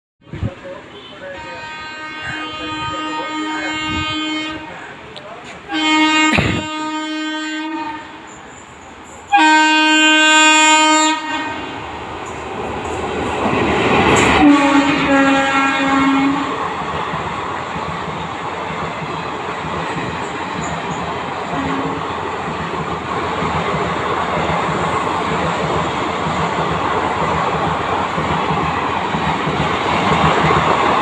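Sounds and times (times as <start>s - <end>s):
train horn blast: 0.2s - 4.9s, 5.6s - 8.4s, 9.3s - 11.8s, 14.3s - 16.6s, 21.5s - 22.1s
train running noise: 0.2s - 31.0s
train wheel clatter: 12.2s - 14.7s, 16.5s - 31.0s.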